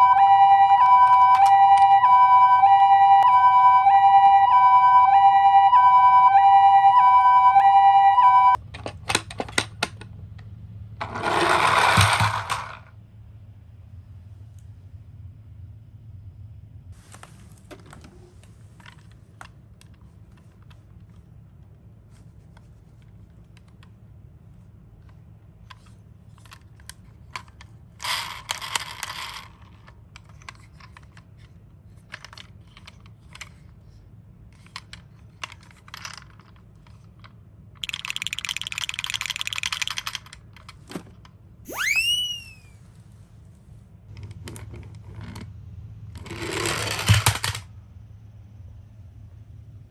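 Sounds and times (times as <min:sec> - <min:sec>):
high whistle-like tone: 0:00.0 - 0:08.6, 0:41.7 - 0:42.8
plastic clicks: 0:34.6 - 0:41.0
toy rattle: 0:37.8 - 0:40.4, 0:41.7 - 0:42.7.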